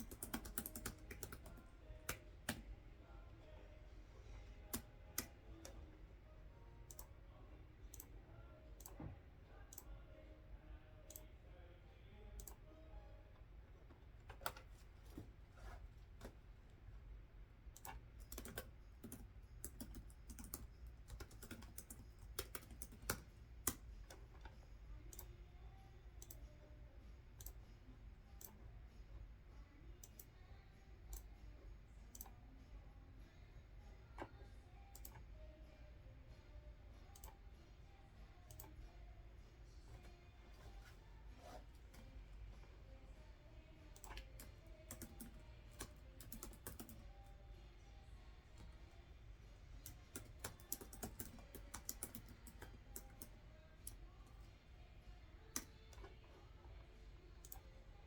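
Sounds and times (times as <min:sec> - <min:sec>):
computer keyboard typing: 0:00.0 - 0:02.7, 0:17.7 - 0:25.4, 0:43.9 - 0:47.4, 0:49.8 - 0:54.4, 0:55.4 - 0:56.5, 0:57.4 - 0:57.9.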